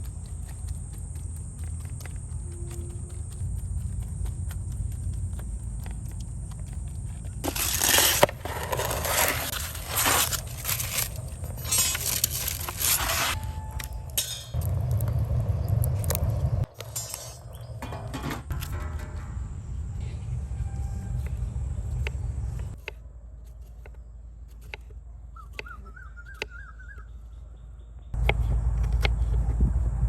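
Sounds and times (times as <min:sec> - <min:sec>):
crunching crinkling handling noise: 0:05.6 - 0:16.7
low rumble: 0:09.5 - 0:23.5, 0:28.2 - 0:30.0.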